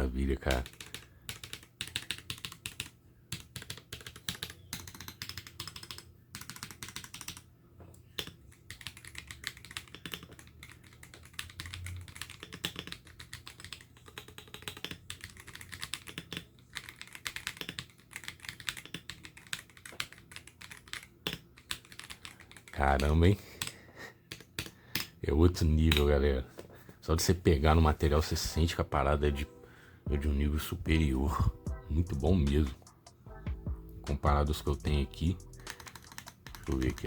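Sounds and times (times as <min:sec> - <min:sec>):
mechanical keyboard typing: 0:00.0 - 0:07.5, 0:08.1 - 0:25.2, 0:33.9 - 0:37.0.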